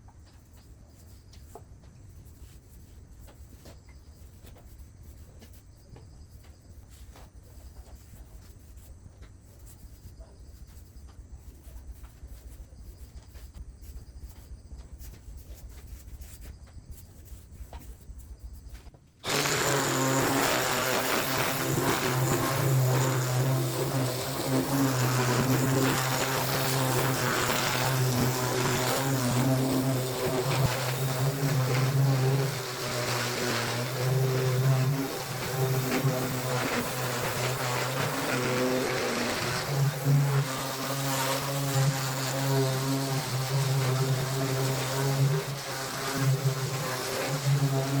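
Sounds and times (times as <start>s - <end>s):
power tool motor running: 19.2s - 48.0s.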